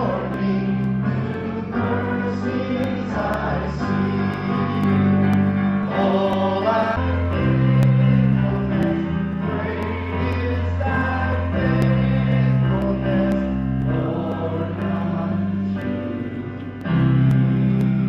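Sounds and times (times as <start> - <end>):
choir singing: 0.0 - 16.6
held bass notes: 0.0 - 18.0.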